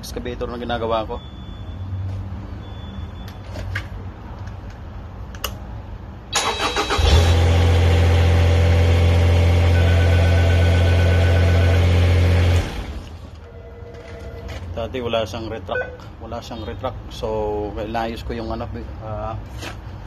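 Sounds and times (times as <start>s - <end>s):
engine starter cranking: 6.3s - 7.5s.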